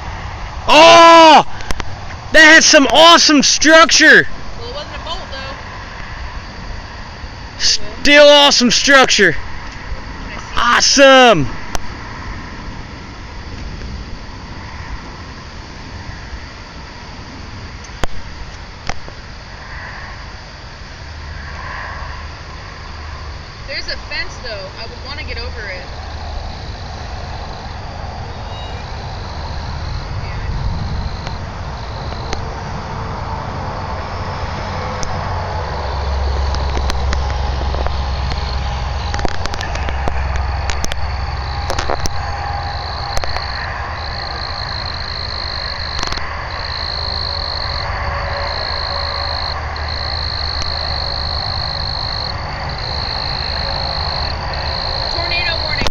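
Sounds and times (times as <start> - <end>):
frogs trilling: 0.7 - 55.9
wind rumble on microphone: 11.5 - 55.9.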